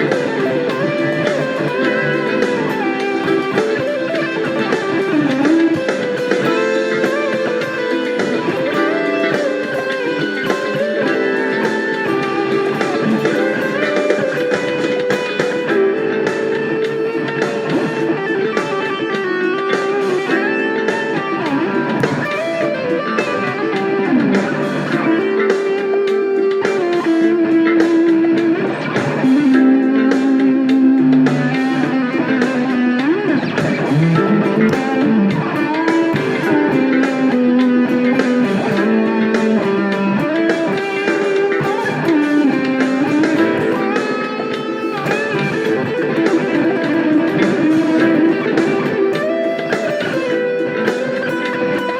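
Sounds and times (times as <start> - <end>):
fuzz electric guitar lead: 0.0 - 51.9.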